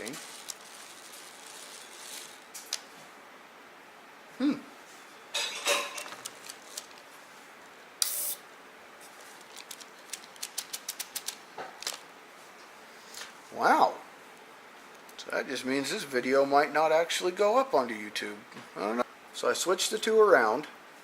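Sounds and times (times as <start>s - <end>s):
short hissing whir: 8.0s - 8.4s.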